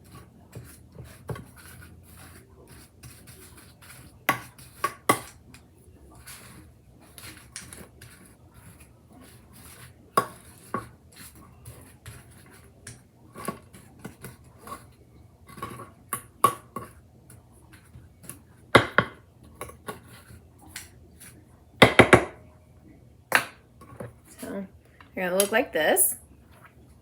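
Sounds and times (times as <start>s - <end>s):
utensil scraping baking pans: 6.1s - 17.0s.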